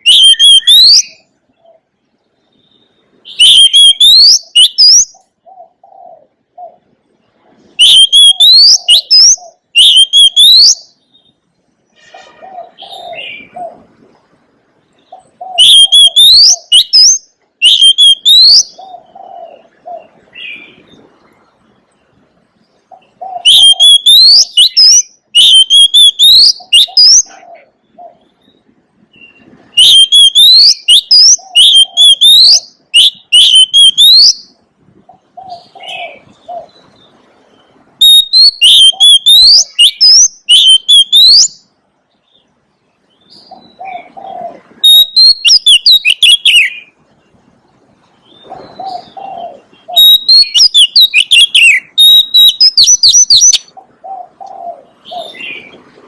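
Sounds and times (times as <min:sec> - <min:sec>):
bird singing whistled phrases: 0:00.0 - 0:01.3, 0:02.4 - 0:05.3, 0:07.8 - 0:11.4, 0:15.5 - 0:18.8, 0:23.4 - 0:27.4, 0:29.2 - 0:34.6, 0:38.0 - 0:41.7, 0:44.8 - 0:46.9, 0:48.4 - 0:53.7
dove cooing: 0:05.2 - 0:06.9, 0:12.2 - 0:14.0, 0:15.1 - 0:16.7, 0:18.6 - 0:20.8, 0:22.9 - 0:24.1, 0:26.5 - 0:28.3, 0:31.3 - 0:32.3, 0:35.1 - 0:36.9, 0:43.4 - 0:45.3, 0:48.3 - 0:50.6, 0:53.7 - 0:56.0.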